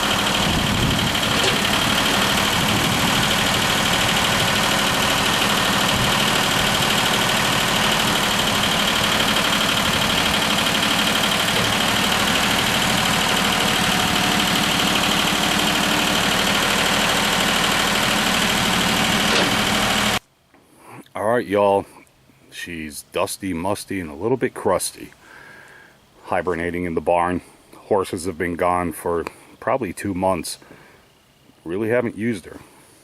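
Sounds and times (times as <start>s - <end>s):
tractor diesel engine idling: 0.0s - 20.2s.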